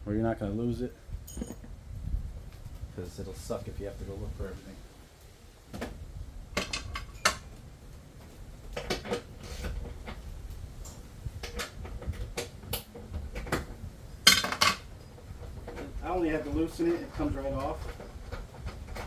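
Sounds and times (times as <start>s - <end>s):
hand tools clinking: 1.3s - 1.8s, 6.6s - 7.6s, 14.2s - 15.3s.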